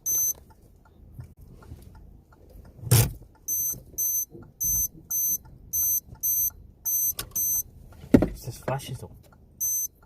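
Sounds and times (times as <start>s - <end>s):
high electronic warning beeps: 0.0s - 0.4s, 3.5s - 7.7s, 9.6s - 10.0s.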